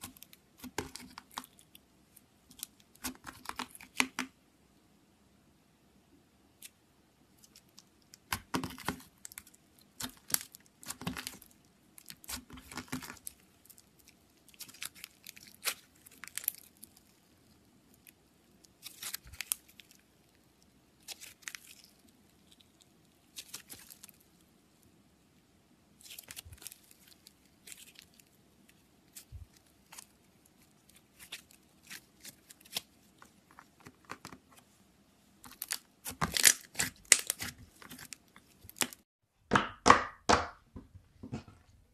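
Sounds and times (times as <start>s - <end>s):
slime crackling and popping: 7.4s - 24.3s, 35.4s - 39.0s.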